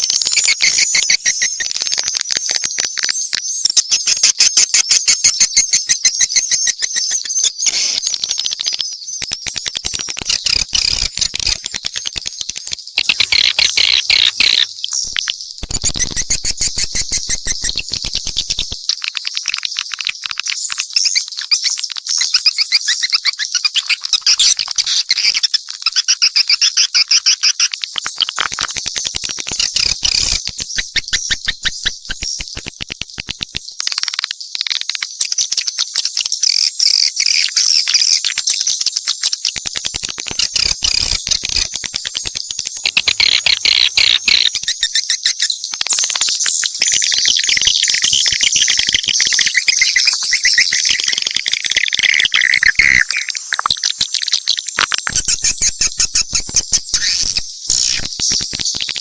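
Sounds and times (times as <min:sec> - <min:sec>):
swiftlets chirping: 0:06.8 - 0:18.8, 0:29.4 - 0:33.8, 0:39.5 - 0:53.4, 0:55.1 - 0:59.0.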